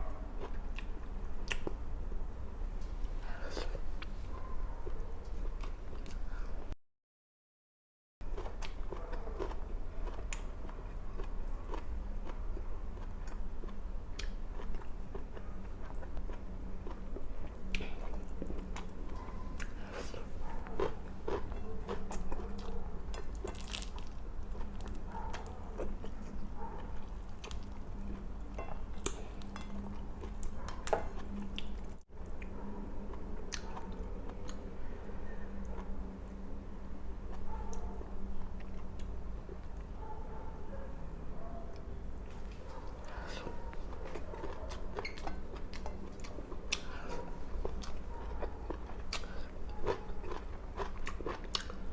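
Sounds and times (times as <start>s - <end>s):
person chewing and crunching food: 8.2s - 36.4s, 41.8s - 51.9s.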